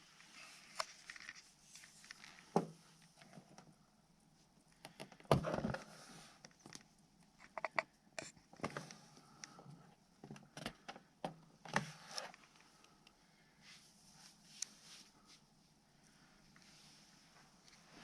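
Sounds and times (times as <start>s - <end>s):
objects being handled clicking: 6.4s - 9.6s.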